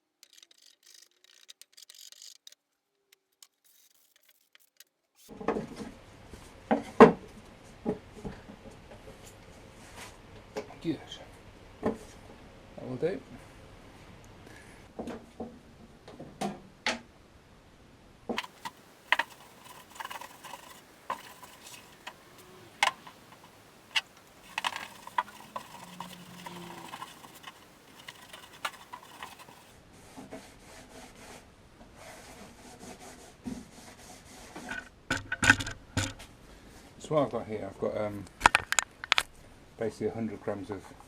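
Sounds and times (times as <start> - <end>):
resin being stirred in a pot: 18.4 - 29.7
sharp clicks and knocks: 18.4 - 29.7.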